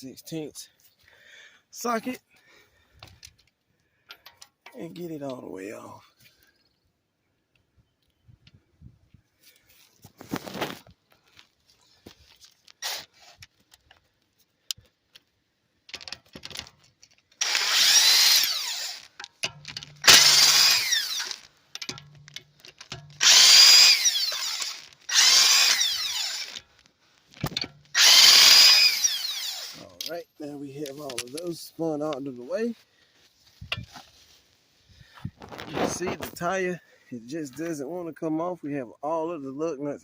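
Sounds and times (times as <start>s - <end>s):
impact gun bursts: 17.4s - 22.2s.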